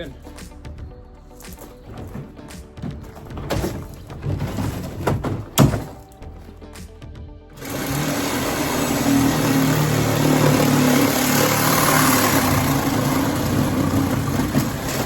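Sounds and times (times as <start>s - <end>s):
vehicle engine running: 7.6s - 15.0s.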